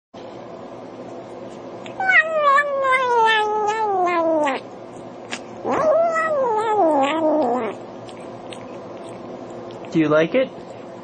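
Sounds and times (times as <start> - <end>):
kitten meowing: 1.9 - 4.6, 5.7 - 7.8.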